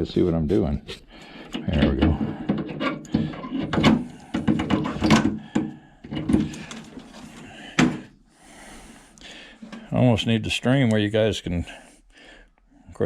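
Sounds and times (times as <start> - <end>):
knocks and rattles in metal cabinet: 1.6 - 8.1.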